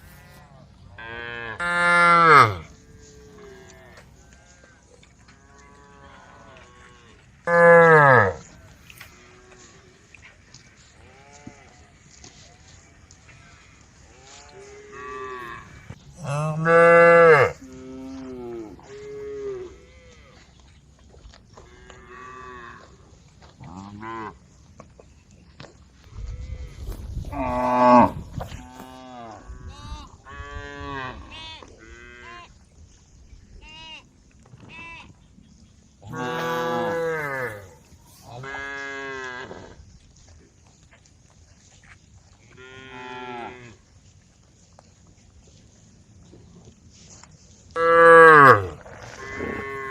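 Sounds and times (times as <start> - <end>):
cows mooing: 0.1 - 4.7, 5.4 - 9.8, 13.4 - 20.3, 26.4 - 29.5, 36.1 - 39.8, 47.8 - 49.9.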